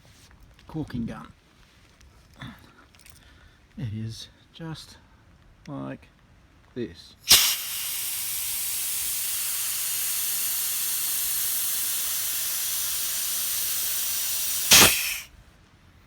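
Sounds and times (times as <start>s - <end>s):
sharp air puff: 7.2s - 15.4s
air caulking gun hissing: 7.3s - 15.3s
loud air burst: 7.3s - 15.4s.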